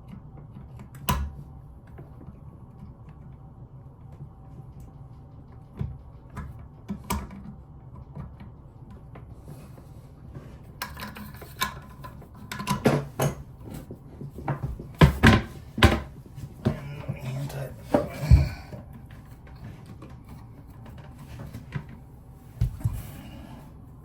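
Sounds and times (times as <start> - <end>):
plumbing parts clicking and rattling: 10.6 - 23.3.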